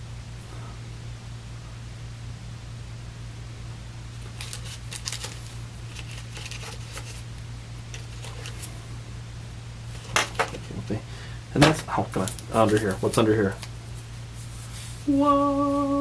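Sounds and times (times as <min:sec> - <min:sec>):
steady low hum: 0:00.0 - 0:16.0
plastic tools clicking and rustling: 0:04.2 - 0:07.2, 0:10.0 - 0:10.7.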